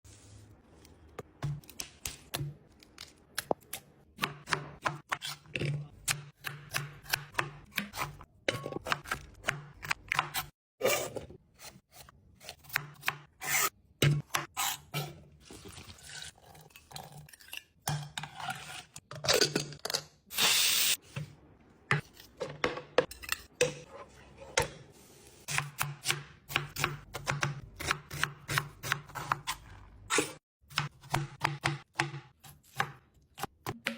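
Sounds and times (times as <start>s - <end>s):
knife chopping on cutting board: 25.5s - 29.5s, 30.7s - 33.9s.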